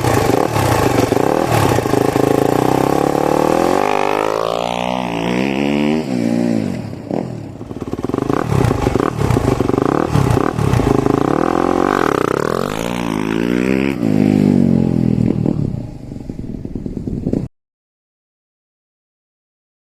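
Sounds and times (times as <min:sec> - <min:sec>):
motorcycle engine revving: 0:00.0 - 0:17.5.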